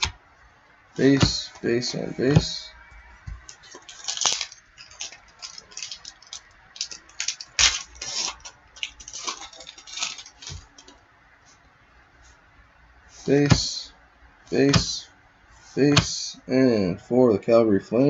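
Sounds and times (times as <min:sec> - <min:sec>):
wrapper tearing and crinkling: 0:03.4 - 0:11.0.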